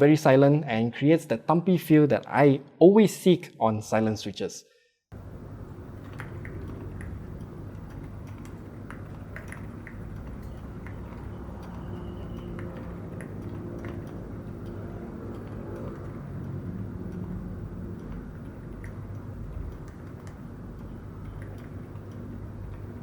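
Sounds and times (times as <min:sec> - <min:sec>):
soft keyboard typing: 0:05.2 - 0:23.0.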